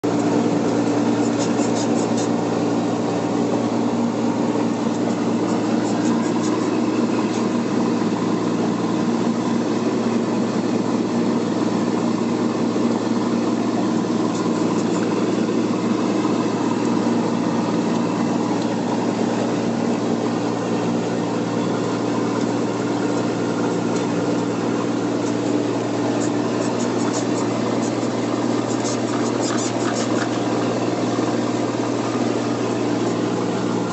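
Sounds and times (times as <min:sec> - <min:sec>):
truck cab creaking and squeaking: 0:00.0 - 0:02.4, 0:04.8 - 0:07.5, 0:25.1 - 0:30.8
truck engine running: 0:00.0 - 0:33.9.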